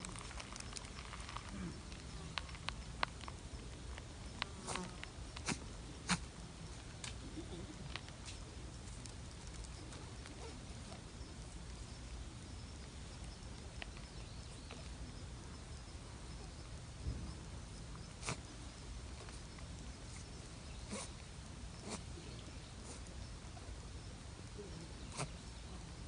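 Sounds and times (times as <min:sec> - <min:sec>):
rabbit sneezing: 0:04.6 - 0:06.3, 0:18.2 - 0:18.5, 0:20.9 - 0:21.2, 0:21.8 - 0:22.2, 0:25.1 - 0:25.4.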